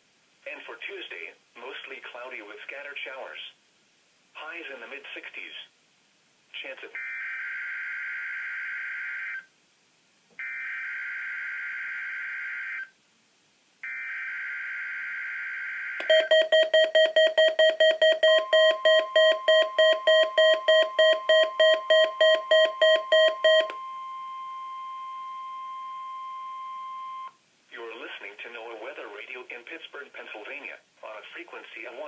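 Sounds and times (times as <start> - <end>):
steady single-pitch alarm tone: 13.8 - 27.3
rapid alarm beeps: 16.0 - 27.3.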